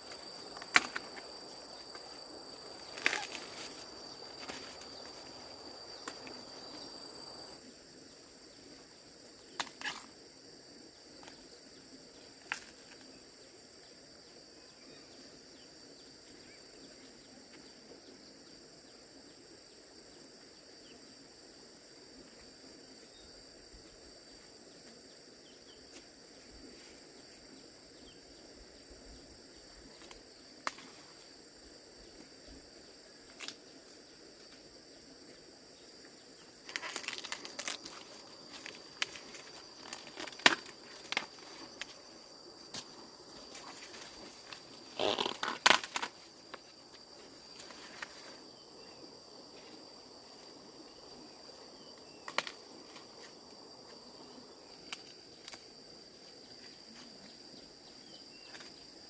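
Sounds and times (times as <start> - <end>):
dry corn leaves rustling: 0.0 - 6.7, 36.6 - 46.6
insect chirring: 0.0 - 59.0.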